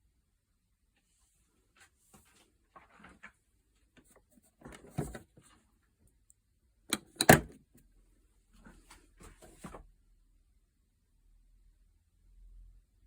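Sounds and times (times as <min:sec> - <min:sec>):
knocks and handling clatter: 0:04.6 - 0:05.3, 0:06.9 - 0:07.6.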